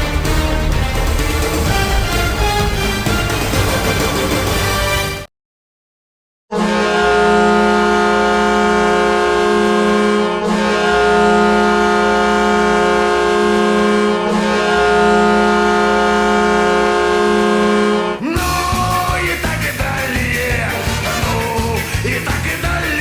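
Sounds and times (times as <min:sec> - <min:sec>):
goal horn blowing: 0:06.5 - 0:18.3
rock song with shouted vocals: 0:18.2 - 0:23.0.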